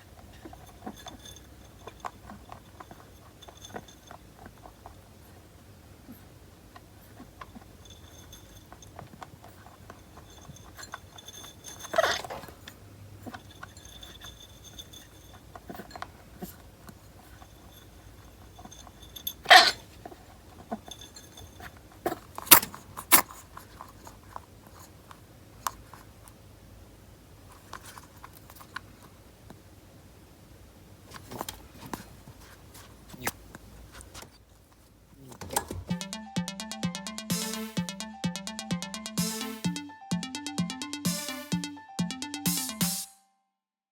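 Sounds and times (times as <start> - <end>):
small clicks and rustles: 0.0 - 26.4, 27.4 - 29.8, 31.0 - 35.8
rabbit sneezing: 19.4 - 19.8.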